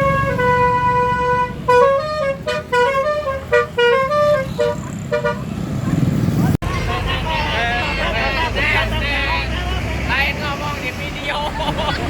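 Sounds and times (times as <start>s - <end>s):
melodic bus horn: 0.0s - 5.5s.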